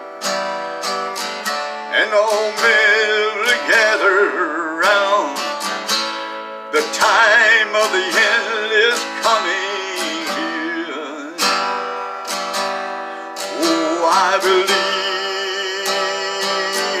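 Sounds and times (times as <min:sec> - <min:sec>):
acoustic guitar strumming: 0:00.0 - 0:17.0
person singing: 0:01.9 - 0:05.9, 0:06.7 - 0:11.8, 0:13.1 - 0:17.0.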